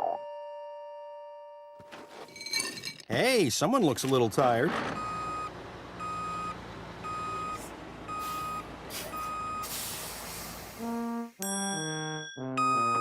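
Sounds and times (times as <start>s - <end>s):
low engine hum: 4.7s - 11.1s
reversing alarm beeping: 5.0s - 9.9s, 11.9s - 13.0s
air brake hiss: 8.2s - 10.9s.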